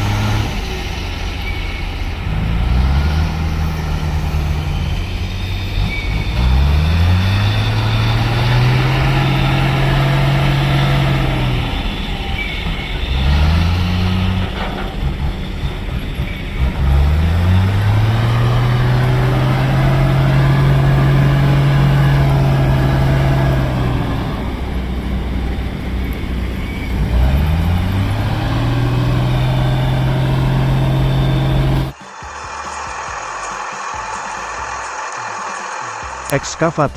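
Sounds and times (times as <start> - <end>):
truck engine revving: 0.0 - 36.9.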